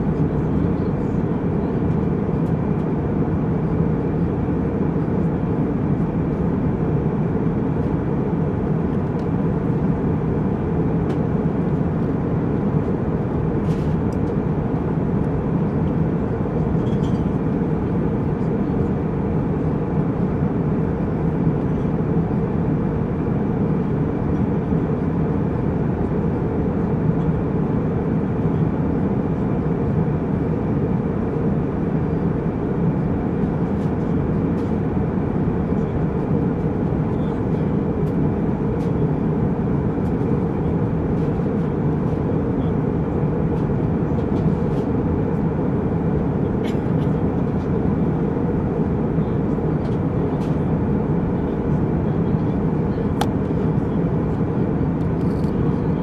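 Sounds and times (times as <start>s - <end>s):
airliner cabin rumble: 0.0s - 56.0s.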